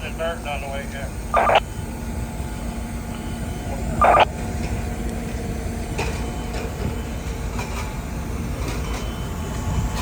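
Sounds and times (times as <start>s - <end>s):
radio hiss and rumble: 0.7s - 1.8s, 3.2s - 4.3s
radio static burst: 1.4s - 1.6s, 4.0s - 4.3s.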